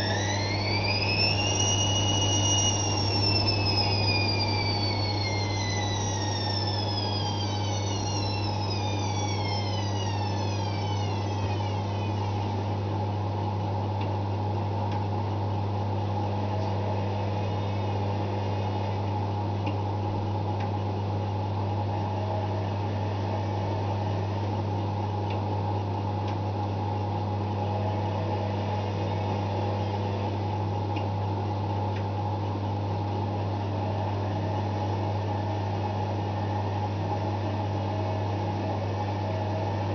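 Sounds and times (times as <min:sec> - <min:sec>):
high whine falling in pitch: 0:00.0 - 0:13.3
washing machine spin hum: 0:00.0 - 0:39.9.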